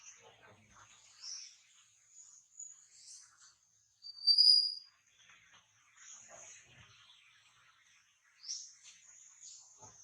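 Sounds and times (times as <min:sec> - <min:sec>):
faint high-pitched animal squeak: 0:04.0 - 0:04.8.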